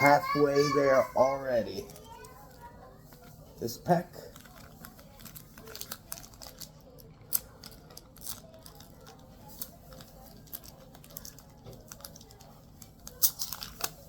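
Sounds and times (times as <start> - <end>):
card pack clicks and rustles: 4.2 - 14.0.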